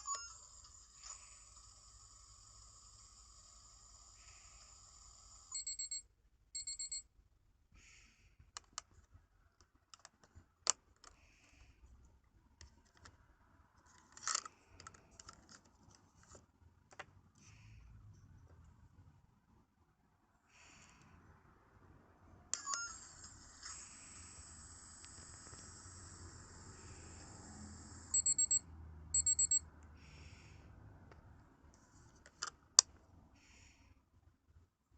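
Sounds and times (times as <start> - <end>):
toy microwave high beeps: 0.0 - 1.2, 5.5 - 7.1, 22.6 - 23.4, 28.1 - 29.7
plastic clicks and handling: 8.5 - 11.2, 13.8 - 17.2, 32.1 - 33.0
high electronic beeps: 28.2 - 28.6, 29.2 - 29.6.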